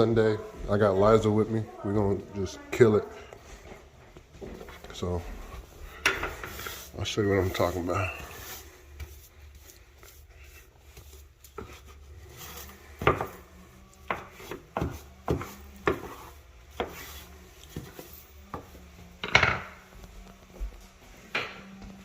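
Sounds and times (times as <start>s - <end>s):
kitchen items knocking and clattering: 19.2s - 19.9s.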